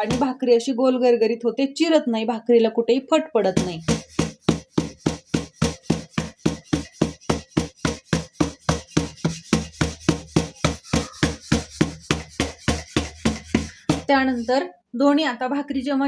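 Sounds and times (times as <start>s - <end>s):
palms patting dough: 0.0s - 0.4s, 3.5s - 14.6s.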